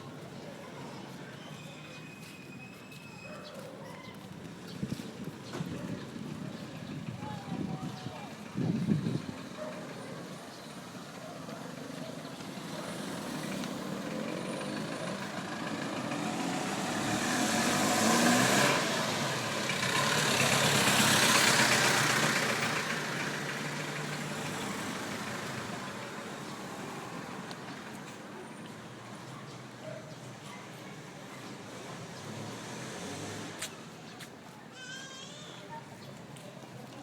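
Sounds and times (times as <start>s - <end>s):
motor vehicle running: 4.2s - 29.0s.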